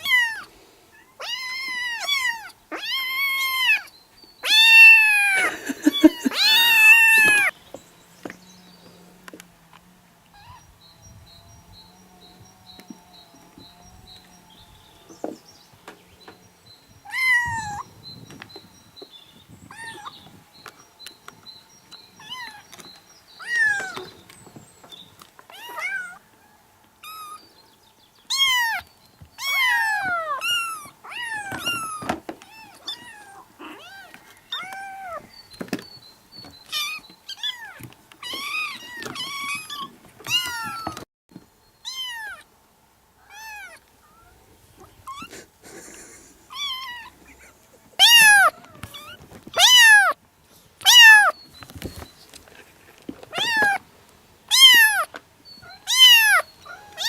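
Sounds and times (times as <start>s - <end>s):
kittens meowing: 0.0s - 7.6s, 10.3s - 10.8s, 16.9s - 18.0s, 19.6s - 20.4s, 21.8s - 24.2s, 25.5s - 26.3s, 27.0s - 27.4s, 28.3s - 35.3s, 36.6s - 41.0s, 41.8s - 42.5s, 43.2s - 50.2s, 50.8s - 51.4s, 53.3s - 53.8s, 54.5s - 57.0s.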